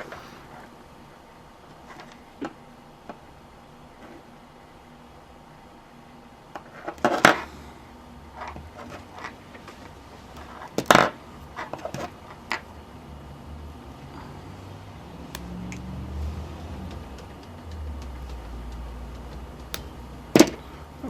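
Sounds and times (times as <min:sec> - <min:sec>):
wire cutters snipping wire: 0:15.2 - 0:17.4, 0:19.2 - 0:20.9
tool clicks and taps: 0:15.3 - 0:20.6.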